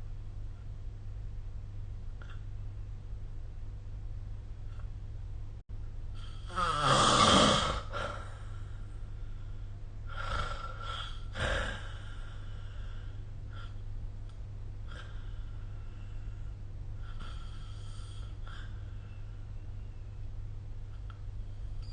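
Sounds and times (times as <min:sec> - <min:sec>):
steady low hum: 0:00.0 - 0:21.9
person snoring: 0:06.2 - 0:08.5, 0:10.1 - 0:13.8.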